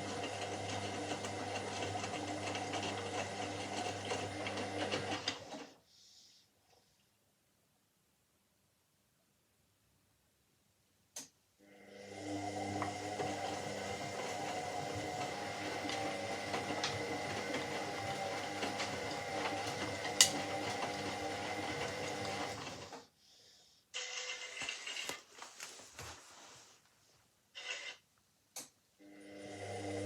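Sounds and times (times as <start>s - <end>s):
washing machine motor hum: 0.0s - 5.7s, 11.6s - 23.0s, 29.0s - 30.0s.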